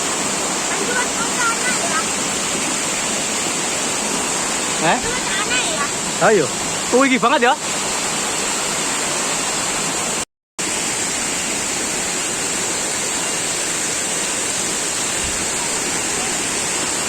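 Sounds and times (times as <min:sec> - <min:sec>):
waterfall rushing: 0:00.0 - 0:17.0.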